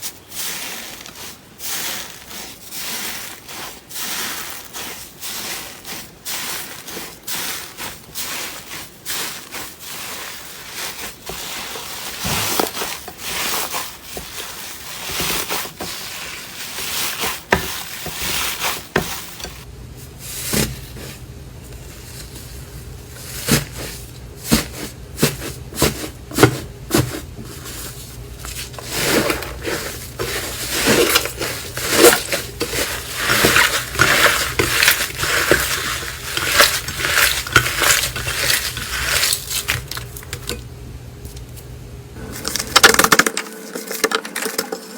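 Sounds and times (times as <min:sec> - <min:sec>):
hands squishing slime: 0:21.8 - 0:40.6.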